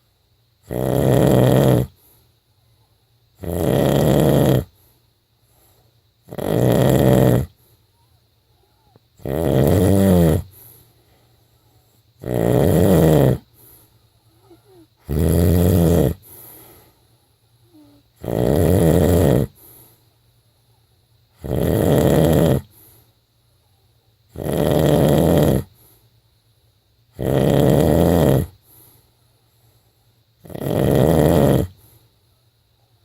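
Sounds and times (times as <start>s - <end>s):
person snoring: 0.7s - 2.0s, 3.4s - 4.7s, 6.3s - 7.6s, 9.2s - 10.6s, 12.2s - 13.5s, 14.4s - 16.9s, 17.6s - 19.6s, 21.4s - 22.7s, 24.4s - 25.7s, 27.2s - 28.6s, 30.4s - 31.8s.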